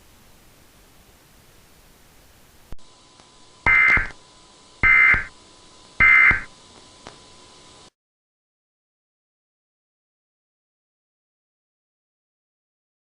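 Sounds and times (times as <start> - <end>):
digital data tone bursts: 3.7 - 4.1, 4.8 - 5.3, 6.0 - 6.5.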